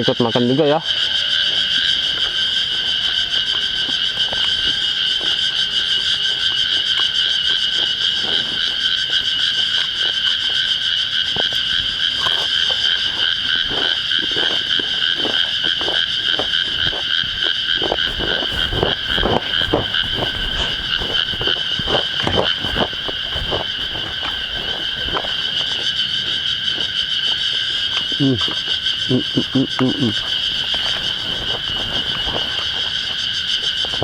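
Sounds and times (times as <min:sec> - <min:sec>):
cicadas droning: 0:00.0 - 0:34.0
crackles and taps: 0:12.2 - 0:28.9, 0:29.5 - 0:34.0.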